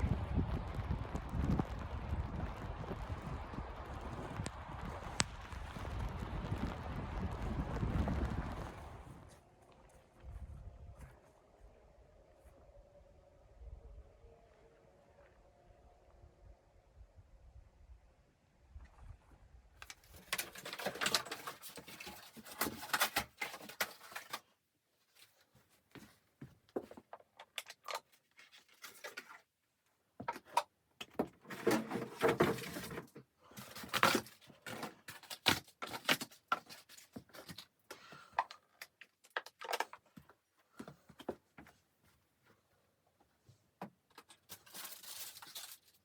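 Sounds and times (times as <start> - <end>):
clicks and small knocks: 19.8 - 24.5, 30.2 - 41.7
rustling handling noise: 19.8 - 29.6, 31.3 - 46.0.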